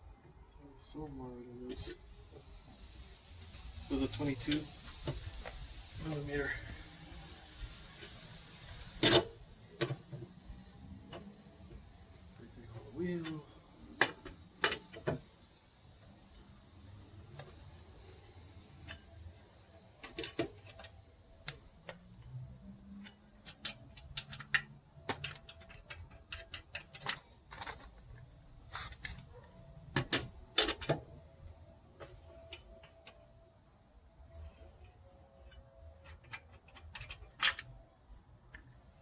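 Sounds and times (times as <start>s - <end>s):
metallic clinks of tools and lug nuts: 7.7s - 12.4s, 13.2s - 15.3s, 17.3s - 37.9s.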